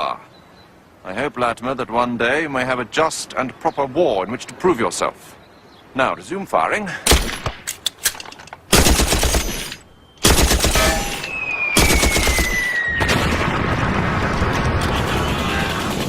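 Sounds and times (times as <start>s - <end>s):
machine gun firing: 8.7s - 11.2s, 11.8s - 13.8s, 14.4s - 16.0s.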